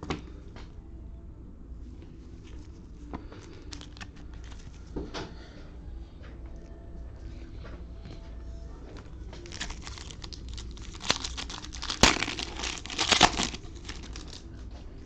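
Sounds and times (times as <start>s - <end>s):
plastic wrapper tearing and crinkling: 3.4s - 4.8s, 9.4s - 14.4s.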